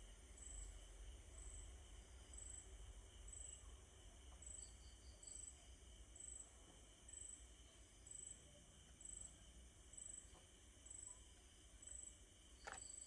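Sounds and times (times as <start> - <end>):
insect chirping: 10.8 - 13.0.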